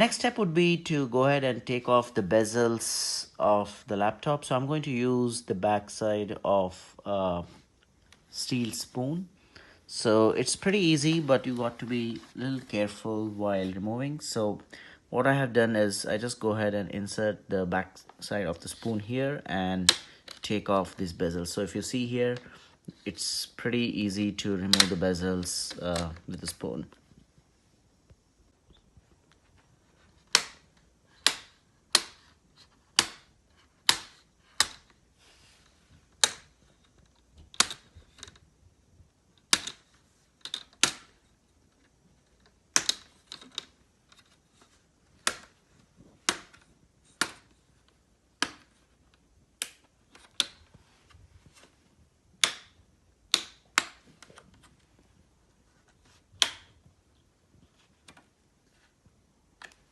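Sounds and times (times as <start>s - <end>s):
plastic clips snapping loose: 37.4s - 38.4s, 39.4s - 39.8s, 42.4s - 44.3s, 52.4s - 54.5s, 56.4s - 56.8s.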